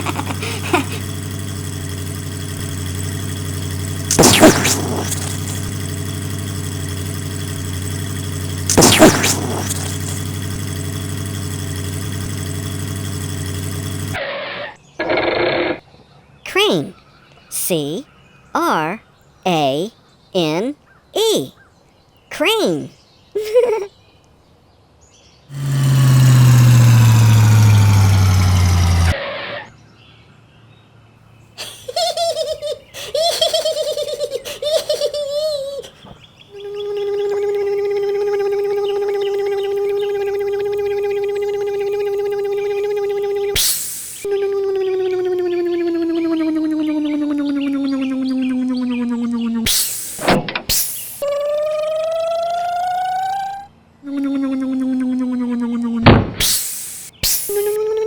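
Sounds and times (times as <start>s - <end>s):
vehicle engine humming: 0.0s - 14.2s, 25.5s - 29.2s, 31.6s - 53.3s.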